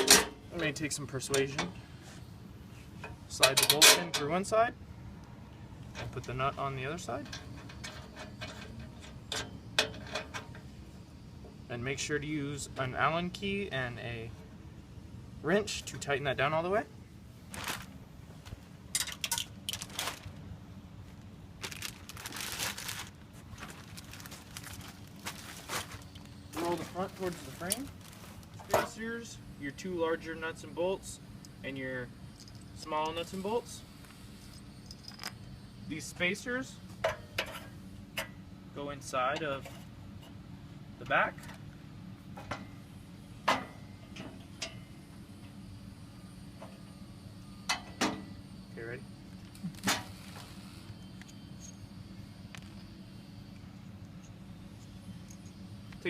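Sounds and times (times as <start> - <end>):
steady low hum: 0.0 - 56.0
bolt scraping and clicking: 7.2 - 10.7.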